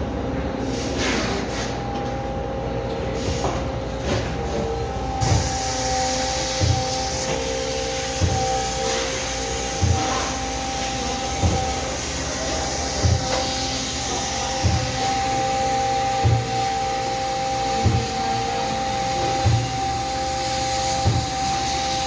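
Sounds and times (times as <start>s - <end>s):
high-pressure water jet hiss: 5.2s - 22.0s.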